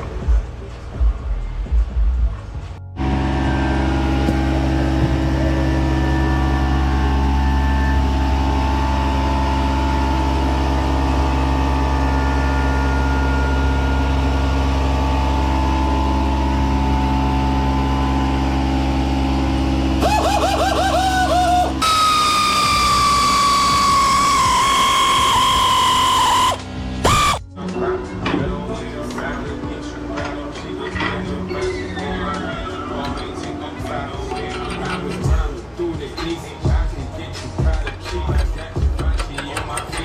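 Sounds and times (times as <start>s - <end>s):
mechanical motor hum: 3.0s - 27.4s.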